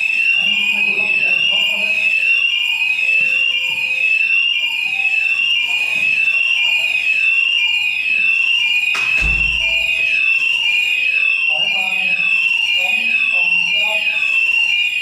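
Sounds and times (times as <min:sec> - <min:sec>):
fire alarm sweeping tone: 0:00.0 - 0:15.0
knock or bump: 0:09.0 - 0:10.1.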